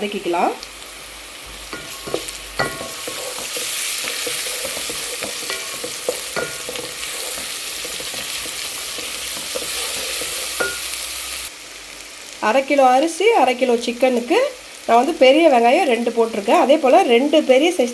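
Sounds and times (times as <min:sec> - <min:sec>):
onions sizzling in hot oil: 0:00.0 - 0:17.9
spoon scraping pan: 0:01.4 - 0:11.5.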